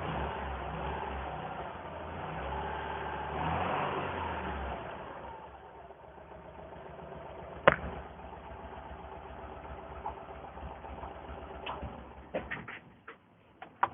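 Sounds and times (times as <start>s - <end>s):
car engine idling: 4.6s - 13.9s.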